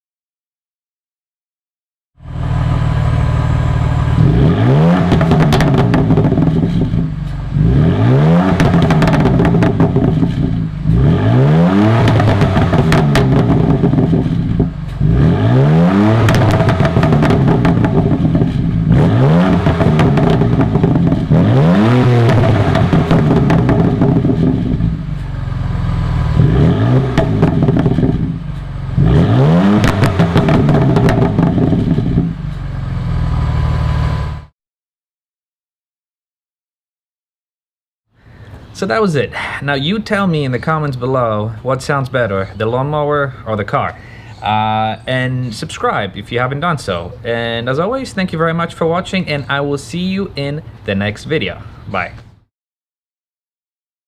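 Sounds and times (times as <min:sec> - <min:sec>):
car engine revving: 0:02.2 - 0:34.5
exhaust crackles: 0:02.2 - 0:34.5, 0:38.2 - 0:52.3.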